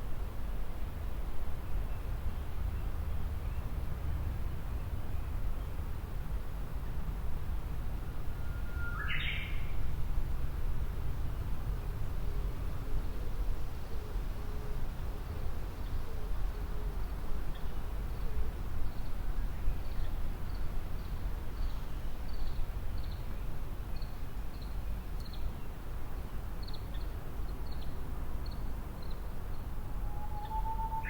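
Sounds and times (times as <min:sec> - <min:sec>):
bird whistled song: 0:08.6 - 0:09.6, 0:30.0 - 0:31.0.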